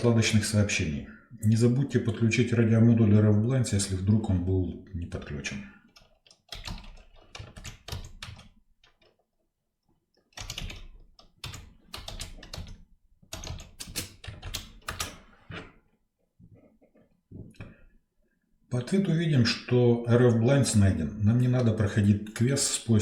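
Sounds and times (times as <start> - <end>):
typing on keyboard: 5.9 - 9.2, 10.3 - 15.3.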